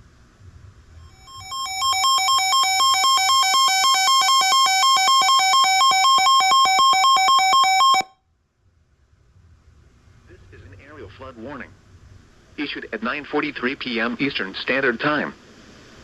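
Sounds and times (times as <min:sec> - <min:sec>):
two-pitch electronic alert beeping: 0:01.1 - 0:08.1.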